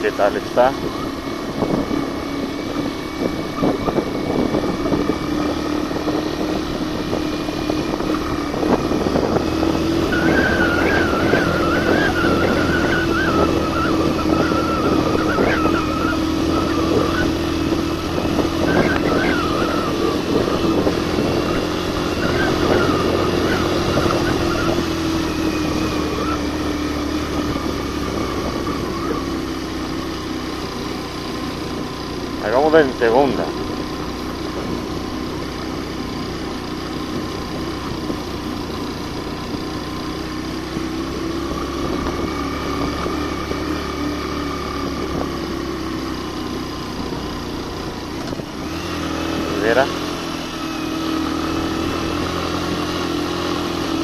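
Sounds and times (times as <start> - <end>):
motorcycle engine pulling under load: 0.0 - 54.0
motorcycle rattling and clicking: 26.3 - 54.0.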